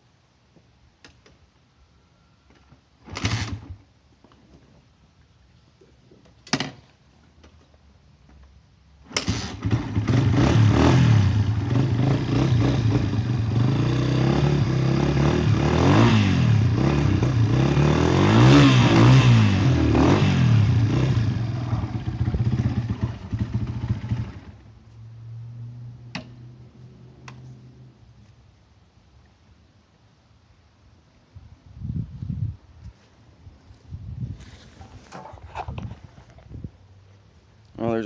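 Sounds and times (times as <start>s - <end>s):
dirt bike engine revving: 9.1s - 24.6s.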